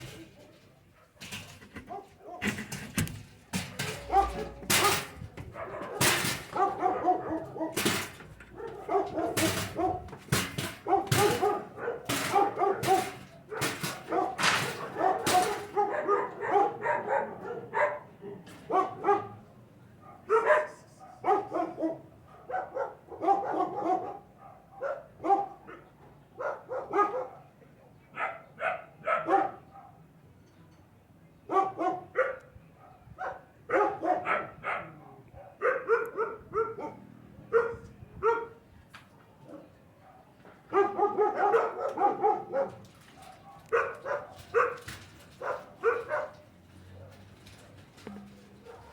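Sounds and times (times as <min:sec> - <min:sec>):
puppies barking: 0:03.6 - 0:25.8, 0:26.4 - 0:27.4, 0:28.2 - 0:30.0, 0:31.5 - 0:38.6, 0:39.5 - 0:48.9.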